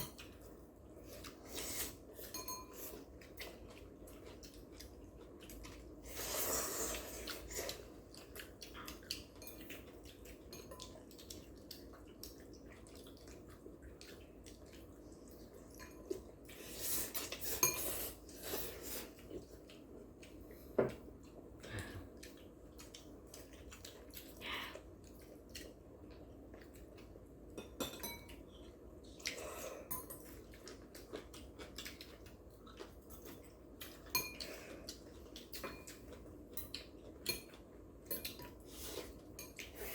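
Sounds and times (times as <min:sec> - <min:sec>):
utensils clinking on bowls: 0:02.2 - 0:03.0.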